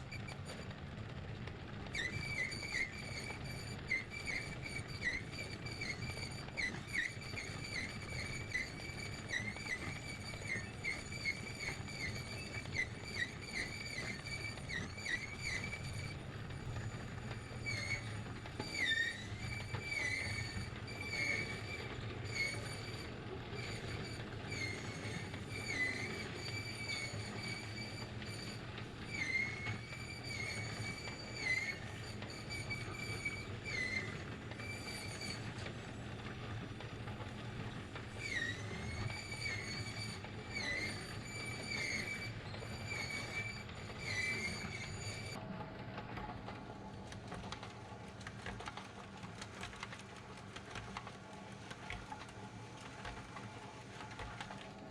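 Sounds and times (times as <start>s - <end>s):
high-pitched squeaks: 1.9s - 35.7s, 38.1s - 45.4s.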